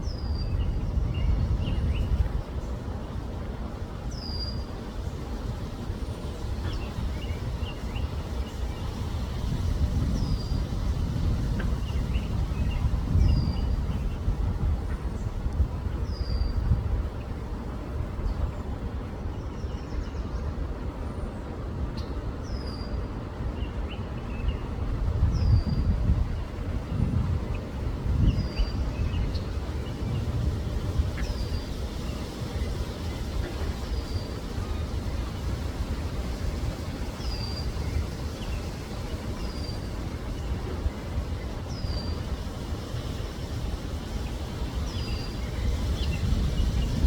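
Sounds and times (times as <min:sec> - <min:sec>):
small birds chirping: 0:25.4 - 0:47.0.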